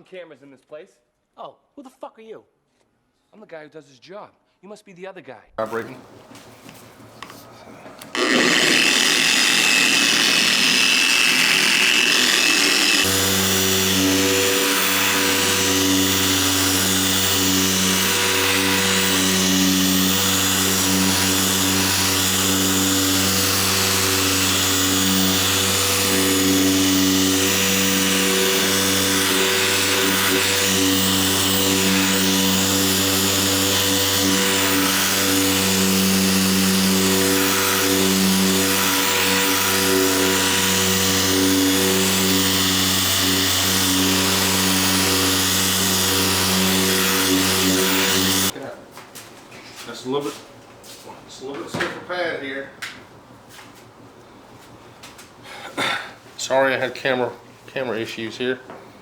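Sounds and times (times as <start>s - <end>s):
electric car polisher running: 8.0s - 48.6s.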